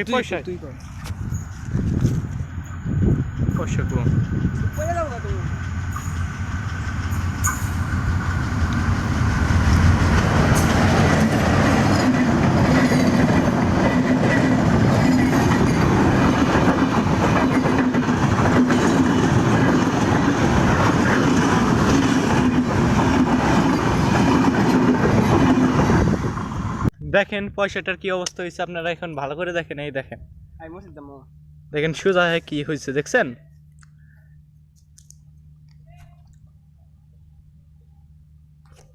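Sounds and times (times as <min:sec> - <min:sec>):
train wheels rumbling on rails: 0:00.0 - 0:26.9.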